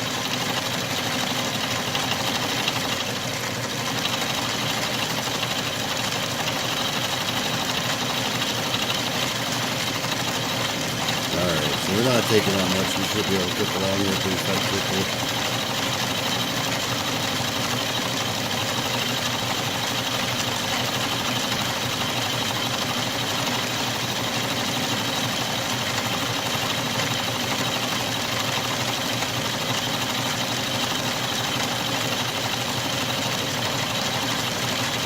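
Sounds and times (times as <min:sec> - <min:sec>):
metal lathe milling drone: 0:00.0 - 0:35.0.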